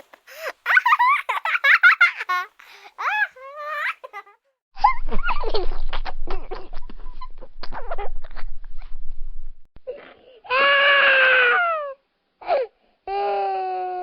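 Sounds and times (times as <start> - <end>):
child chattering and giggling: 0.6 - 8.5
small child crying: 9.9 - 14.0.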